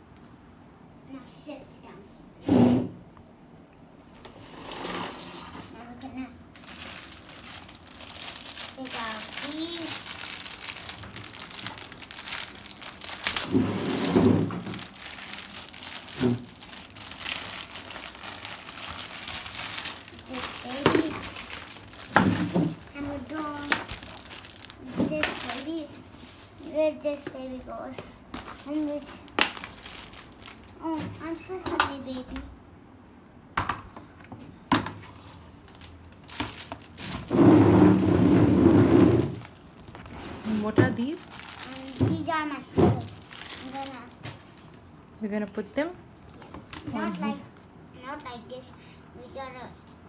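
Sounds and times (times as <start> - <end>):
plastic packaging crinkling: 6.4 - 26.6, 28.3 - 30.8, 35.1 - 38.0, 39.0 - 47.4.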